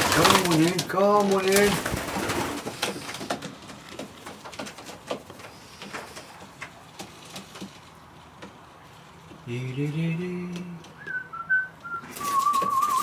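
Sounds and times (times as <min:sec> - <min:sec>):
pigeon cooing: 0:00.0 - 0:03.6, 0:10.9 - 0:13.0.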